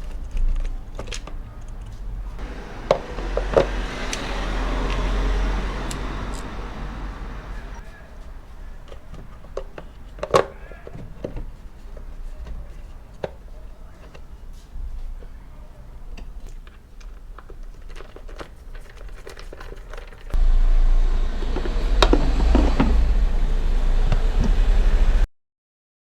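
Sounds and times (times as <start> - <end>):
plastic crinkling: 0.0 - 2.4, 16.4 - 20.4
tools clicking and tapping: 0.0 - 5.2
low rumble: 20.4 - 25.3.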